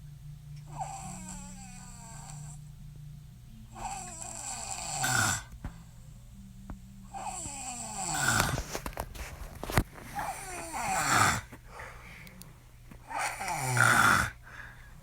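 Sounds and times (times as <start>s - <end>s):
woman snoring: 0.6s - 2.7s, 3.7s - 6.0s, 7.0s - 8.9s, 9.6s - 12.0s, 13.0s - 14.8s.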